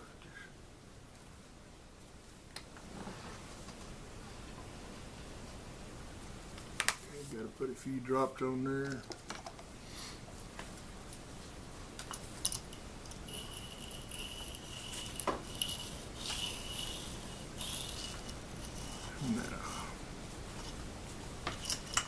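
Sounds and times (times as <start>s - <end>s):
thin high whine: 13.0s - 22.0s
chisel scraping on whetstone: 13.3s - 19.7s.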